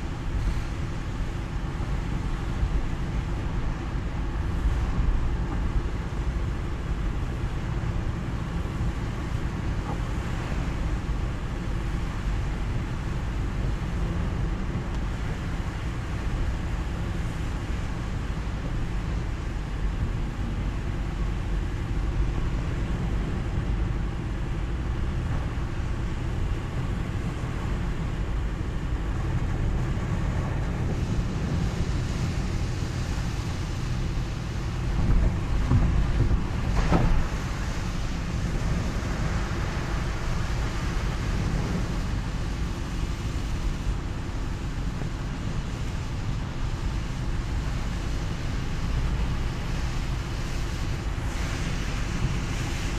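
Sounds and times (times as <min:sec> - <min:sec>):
car road rumble: 0:00.0 - 0:52.9
wet tyres and rain hiss: 0:00.0 - 0:52.9.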